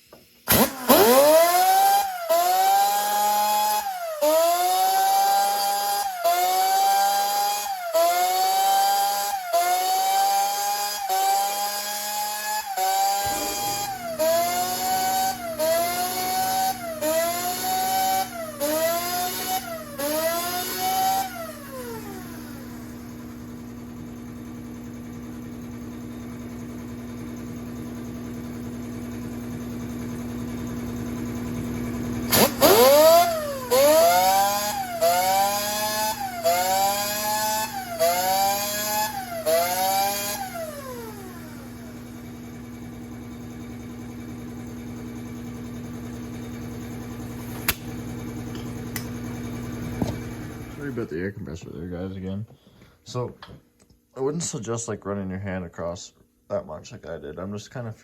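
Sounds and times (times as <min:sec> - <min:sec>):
air compressor humming: 0:12.7 - 0:24.8, 0:30.3 - 0:51.2
sharp crack: 0:47.5 - 0:48.0.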